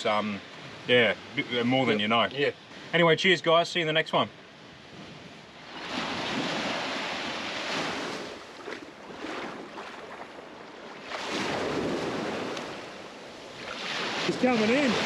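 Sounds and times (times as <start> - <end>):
ocean waves breaking on beach: 0.0 - 3.1, 4.4 - 15.0.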